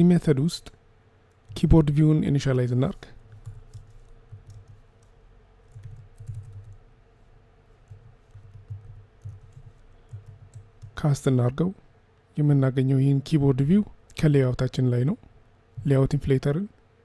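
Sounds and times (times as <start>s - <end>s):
typing on computer keyboard: 3.3s - 6.8s, 7.7s - 11.0s.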